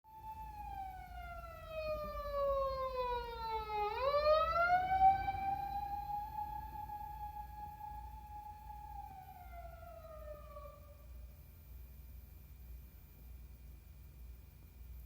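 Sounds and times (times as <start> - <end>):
emergency siren wailing: 0.1 - 11.2.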